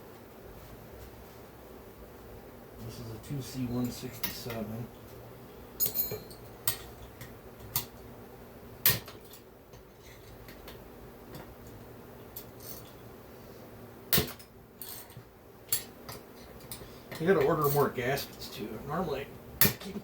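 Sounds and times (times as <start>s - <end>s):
metal tool parts clinking: 5.8s - 6.9s.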